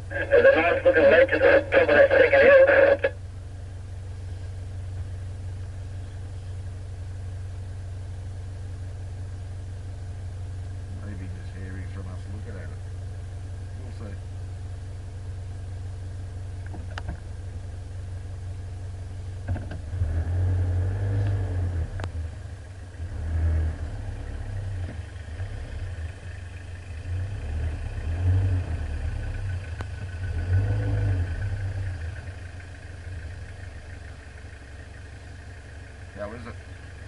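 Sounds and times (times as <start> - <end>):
vehicle engine revving: 19.2 - 37.0.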